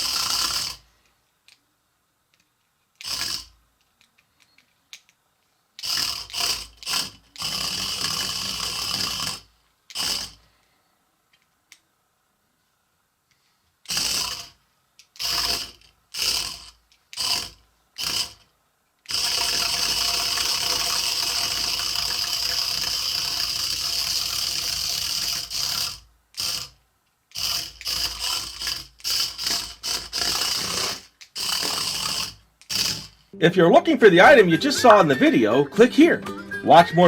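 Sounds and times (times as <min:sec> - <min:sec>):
toy robot motors whirring: 0:00.0 - 0:01.6, 0:02.3 - 0:05.2, 0:05.8 - 0:10.5, 0:13.8 - 0:33.3.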